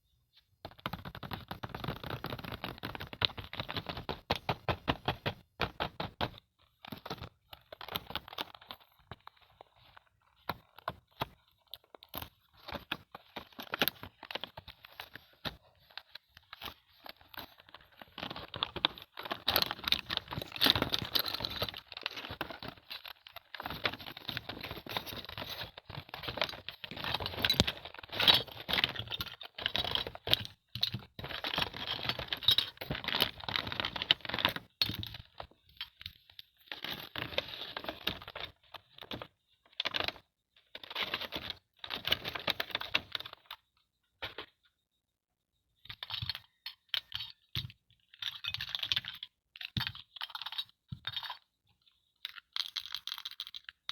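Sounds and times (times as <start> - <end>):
plastic toy pieces clicking and rattling: 6.7 - 39.0, 45.9 - 51.5, 52.2 - 53.9
packaging crinkling and tearing: 19.4 - 22.5.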